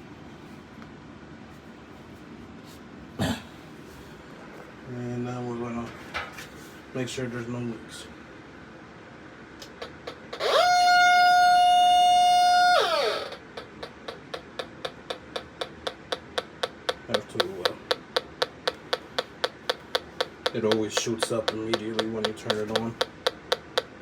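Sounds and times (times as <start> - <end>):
gas detector ticking: 13.6 - 24.0.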